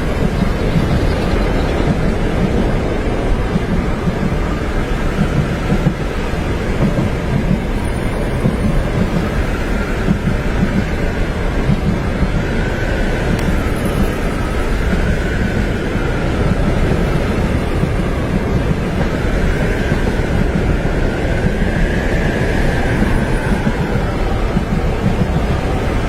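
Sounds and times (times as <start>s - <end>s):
train rumbling on tracks: 0.0s - 26.0s
faint whine: 13.3s - 18.2s.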